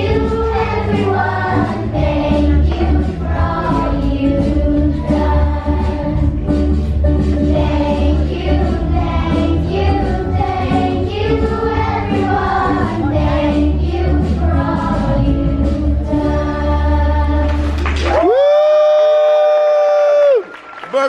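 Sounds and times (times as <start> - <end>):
choir singing: 0.0 - 6.4, 7.4 - 17.7.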